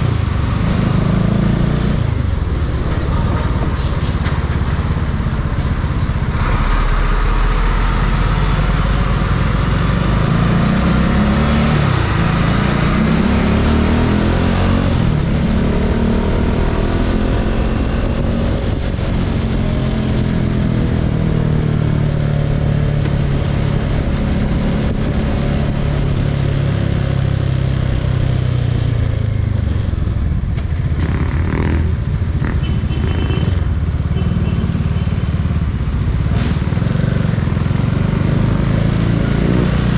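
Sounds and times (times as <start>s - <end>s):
motorcycle engine accelerating: 0.0s - 2.2s, 5.8s - 39.9s
road and wind noise: 0.0s - 39.9s.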